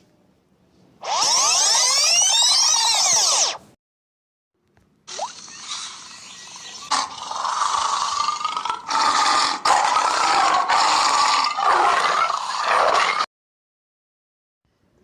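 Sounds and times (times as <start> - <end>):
harsh rasping sound effect: 1.0 - 3.6.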